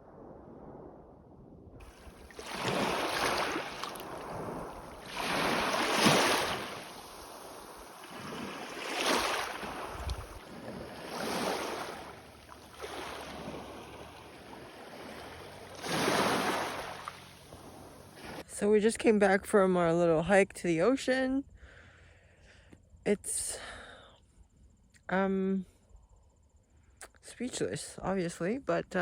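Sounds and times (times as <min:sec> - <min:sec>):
ocean waves breaking: 0:01.8 - 0:18.4.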